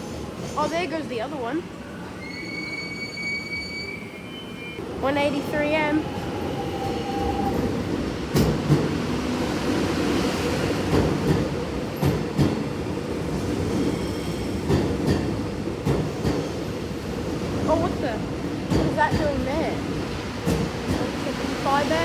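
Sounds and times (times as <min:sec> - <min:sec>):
electric train rumbling: 0:00.0 - 0:22.0
high wheel squeal: 0:02.2 - 0:04.8.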